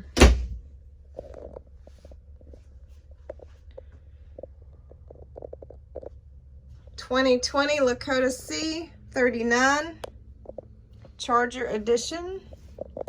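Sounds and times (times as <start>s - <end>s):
steady low rumble: 0.0s - 13.0s
faint clicks and taps: 1.2s - 7.0s, 10.0s - 11.2s.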